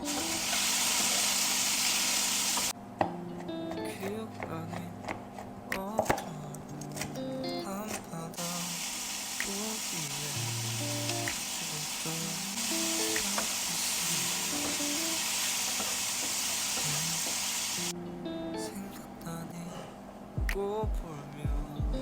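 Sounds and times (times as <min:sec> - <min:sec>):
food sizzling in a pan: 0:00.0 - 0:02.7, 0:08.4 - 0:17.9.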